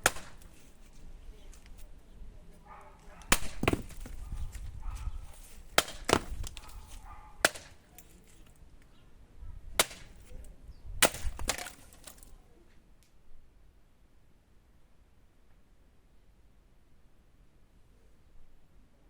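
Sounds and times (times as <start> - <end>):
axe chopping into wood: 0.0 - 0.6, 3.3 - 4.7, 5.3 - 7.9, 9.8 - 10.3, 11.0 - 12.2.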